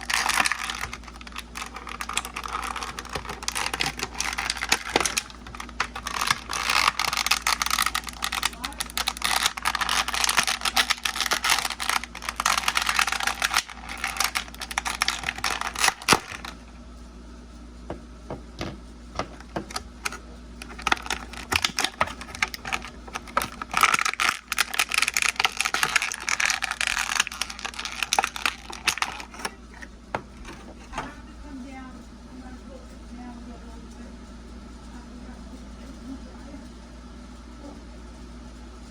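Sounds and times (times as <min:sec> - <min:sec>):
packaging crinkling: 0:00.0 - 0:16.7, 0:18.5 - 0:31.3.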